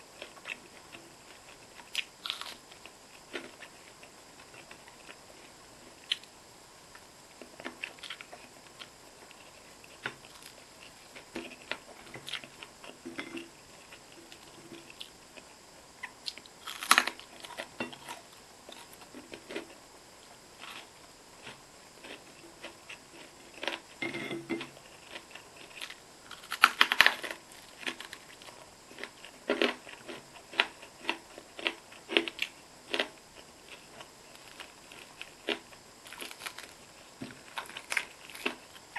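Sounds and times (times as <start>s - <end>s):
crunchy bites: 0.2s - 5.2s, 7.4s - 13.0s, 13.9s - 19.8s, 24.6s - 38.9s.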